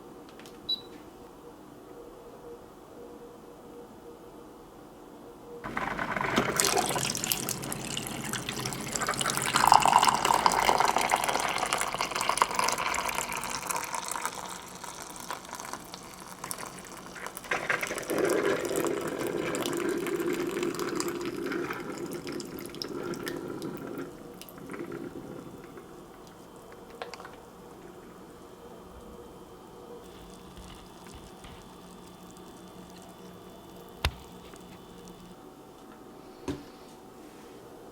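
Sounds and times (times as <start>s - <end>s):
liquid pouring: 5.7s - 28.4s, 30.0s - 35.4s.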